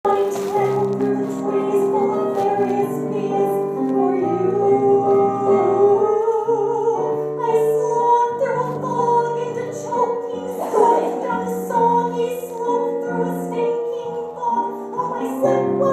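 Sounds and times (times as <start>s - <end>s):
piano accompaniment: 0.0s - 15.9s
woman singing held notes: 10.4s - 12.6s.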